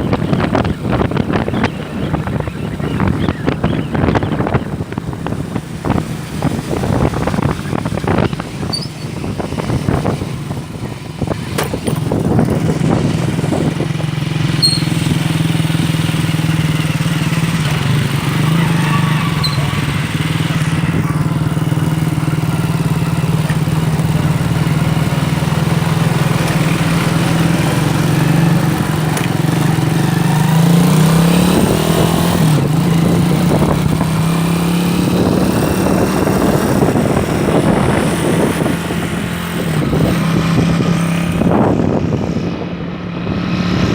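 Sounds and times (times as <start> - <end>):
engine running steadily: 0.0 - 43.9.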